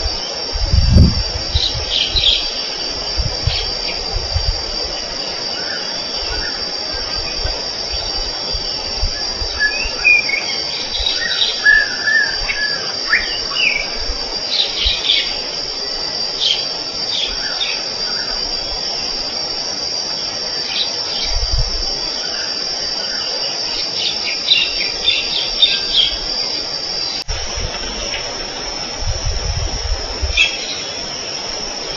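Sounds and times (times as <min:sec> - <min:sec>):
high-pitched insect drone: 0:00.0 - 0:31.9
birds chirping: 0:00.2 - 0:15.7.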